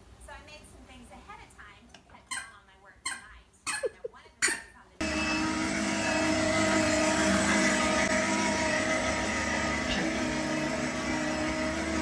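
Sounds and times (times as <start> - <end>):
motor humming: 5.0 - 12.0.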